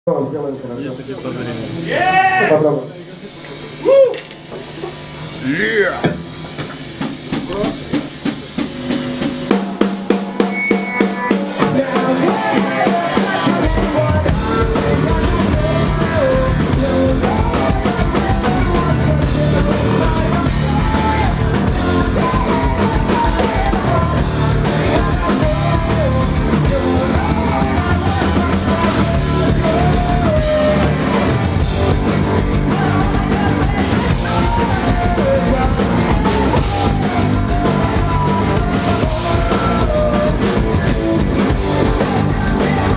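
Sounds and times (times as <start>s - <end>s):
rock band playing live: 4.2s - 42.9s
drum hits: 6.0s - 18.8s
wavering melody line: 10.3s - 11.8s.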